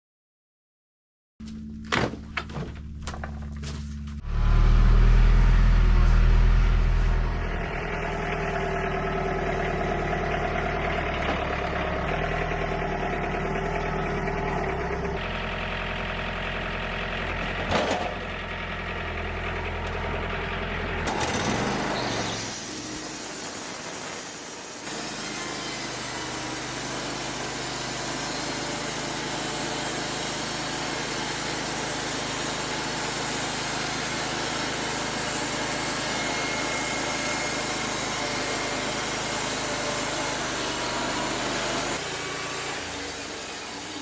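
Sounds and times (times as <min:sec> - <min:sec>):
sawmill engine running: 0:02.2 - 0:44.0
low rumble: 0:02.8 - 0:08.8.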